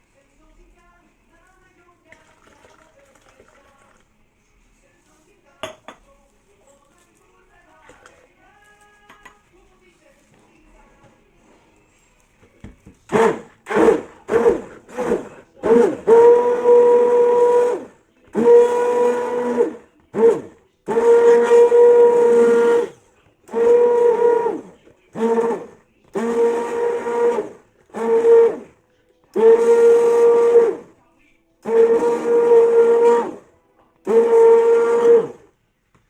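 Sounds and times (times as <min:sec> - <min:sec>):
stick blender motor whine: 0:13.1 - 0:28.8, 0:29.4 - 0:30.9, 0:31.6 - 0:35.5.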